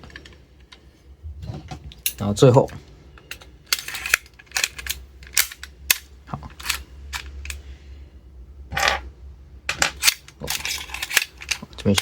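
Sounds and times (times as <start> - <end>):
metallic clicks of pistol parts: 3.2 - 7.6, 9.9 - 12.0.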